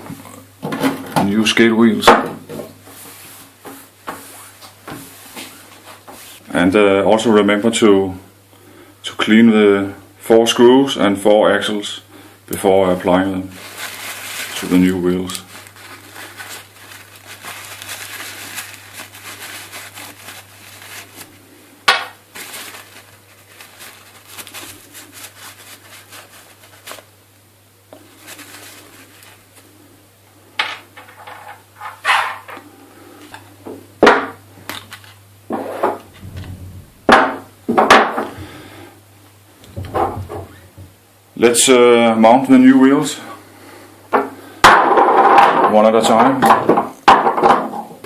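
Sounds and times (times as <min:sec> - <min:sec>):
kitchen paper rustling: 0:02.8 - 0:06.4, 0:12.7 - 0:27.2, 0:27.9 - 0:29.9.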